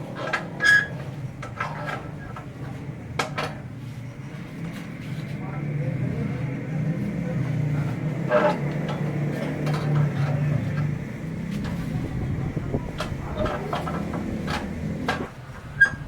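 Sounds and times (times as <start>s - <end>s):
motor humming: 0.5s - 16.0s
knocks and clicks of work: 12.9s - 15.9s.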